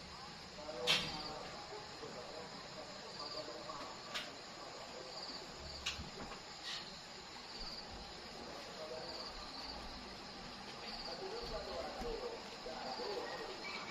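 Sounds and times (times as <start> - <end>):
insects chirping in trills: 0.0 - 13.9
outdoor hiss: 0.0 - 13.9.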